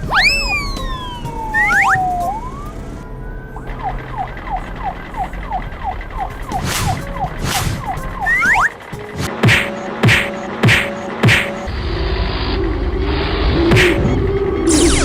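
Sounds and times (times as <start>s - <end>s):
short falling chirps: 0.0s - 2.7s
falling whistle tone: 0.0s - 2.8s, 6.4s - 8.8s
whooshes: 6.5s - 8.6s.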